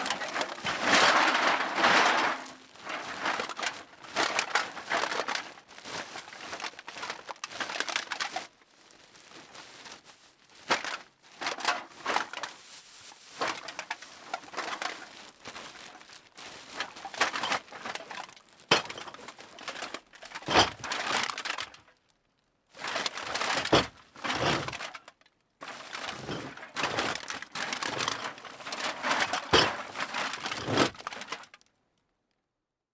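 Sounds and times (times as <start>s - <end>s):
metal cans clinking and clattering: 0.0s - 5.4s, 17.0s - 21.6s, 22.8s - 24.9s, 25.6s - 31.5s
bag rustling: 12.0s - 21.2s, 22.9s - 24.9s, 25.8s - 31.4s.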